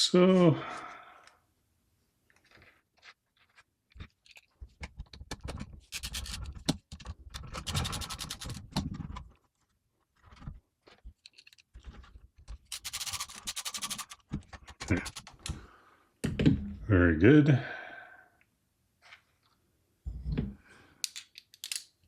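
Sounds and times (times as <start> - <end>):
metal and plastic scraping: 2.3 - 15.5
computer parts clicking: 6.0 - 9.0, 12.6 - 15.5.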